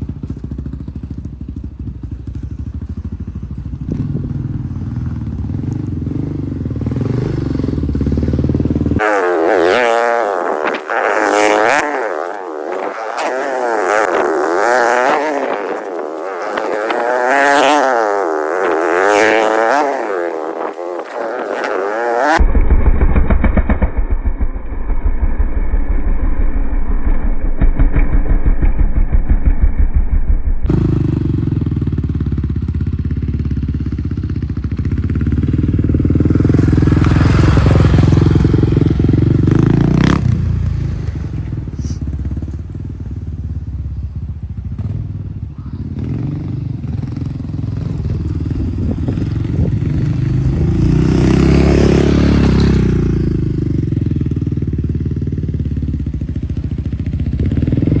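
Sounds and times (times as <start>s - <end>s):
dirt bike engine revving: 3.8s - 25.8s, 33.5s - 40.6s, 46.0s - 58.0s.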